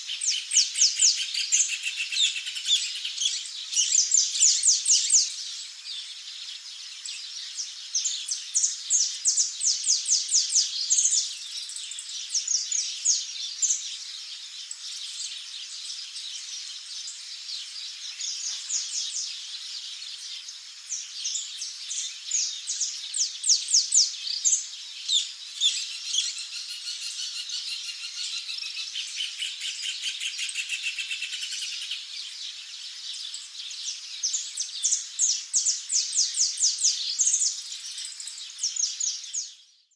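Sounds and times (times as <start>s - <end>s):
small birds chirping and trilling: 0.0s - 39.9s.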